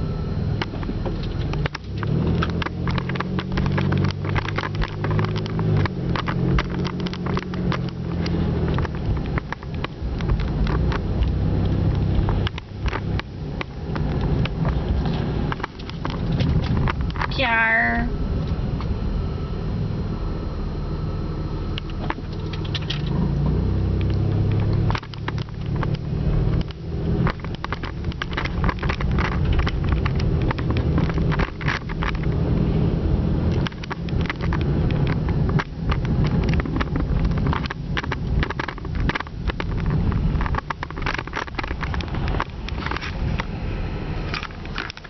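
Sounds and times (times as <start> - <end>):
car cabin road rumble: 0.0 - 45.0
crackles and knocks: 0.5 - 17.5, 18.2 - 19.4, 21.6 - 45.0.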